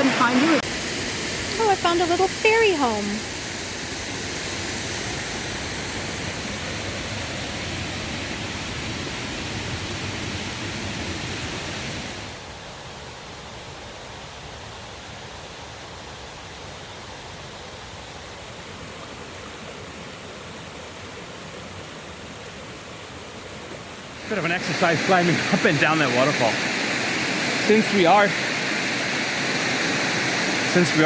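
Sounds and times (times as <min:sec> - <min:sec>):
waterfall rushing: 0:00.0 - 0:12.5, 0:24.0 - 0:31.0.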